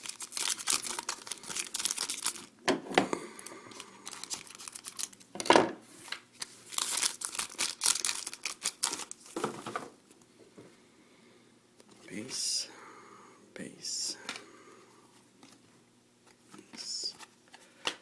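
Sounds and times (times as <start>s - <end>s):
card pack wrapper crinkling and tearing: 0.0s - 2.5s, 3.4s - 5.3s, 6.4s - 9.4s
cards rustling: 0.0s - 2.5s, 3.7s - 5.2s, 6.0s - 9.4s.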